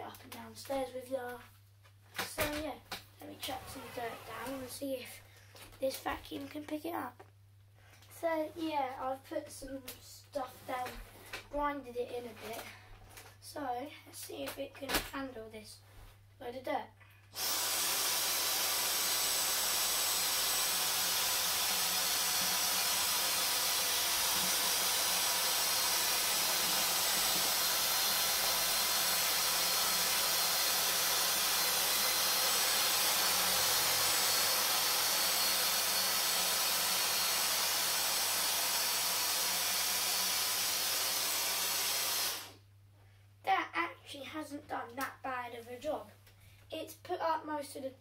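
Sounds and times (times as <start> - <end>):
vacuum cleaner running: 17.4 - 42.6.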